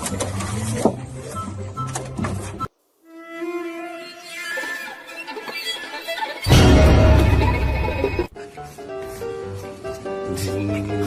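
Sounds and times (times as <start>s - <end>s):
loud dense music: 6.5s - 8.3s.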